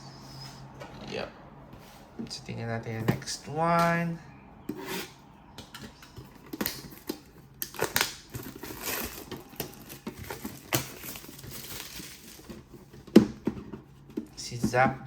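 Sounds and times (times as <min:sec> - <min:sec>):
crinkling: 0:06.4 - 0:12.9.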